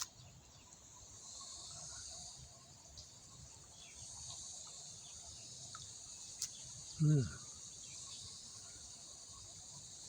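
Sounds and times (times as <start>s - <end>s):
insect chorus: 0.0s - 10.0s
small tick: 2.9s - 3.2s, 5.7s - 6.6s.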